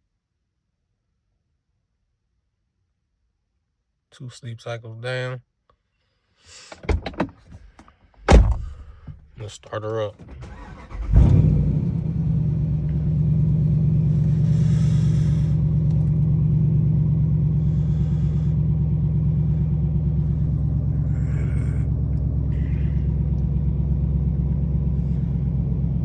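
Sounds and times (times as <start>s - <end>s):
car engine starting and idling: 6.6s - 26.0s
short hisses: 14.3s - 15.6s.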